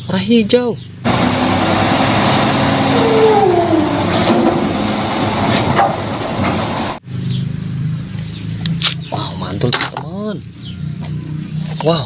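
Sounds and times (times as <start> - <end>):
heavy truck engine running: 1.0 - 7.0
tone sliding down in pitch: 2.8 - 4.6.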